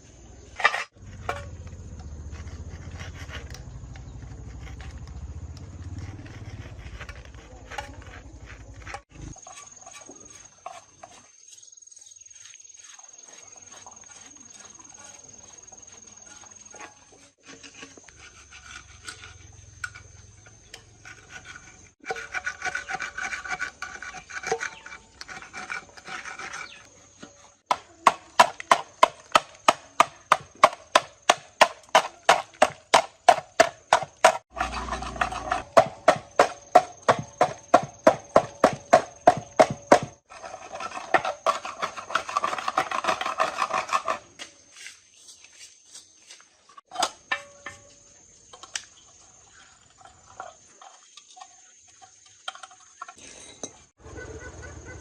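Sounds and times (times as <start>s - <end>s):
hand abrasive rasping strokes: 0.6s - 11.4s, 12.3s - 44.5s.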